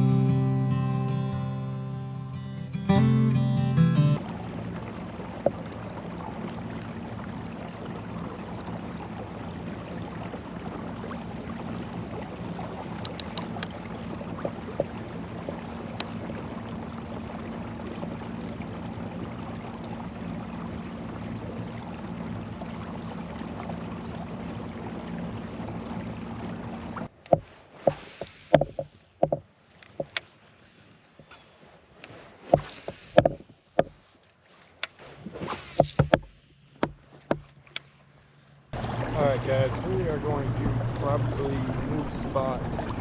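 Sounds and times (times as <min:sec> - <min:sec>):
low steady hum: 0:37.4 - 0:43.0
water washing: 0:38.8 - 0:43.0.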